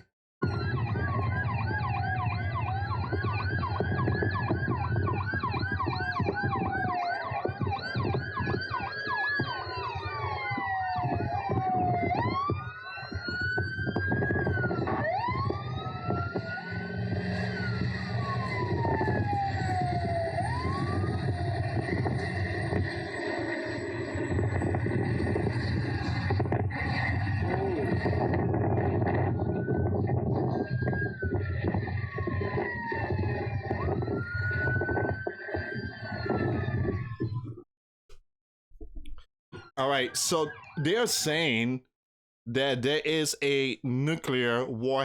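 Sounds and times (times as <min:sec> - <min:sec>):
sirens wailing: 0:00.4 - 0:37.4, 0:39.6 - 0:41.6
siren yelping: 0:00.4 - 0:37.6, 0:39.6 - 0:41.7
low rumble of vehicles: 0:15.0 - 0:23.2.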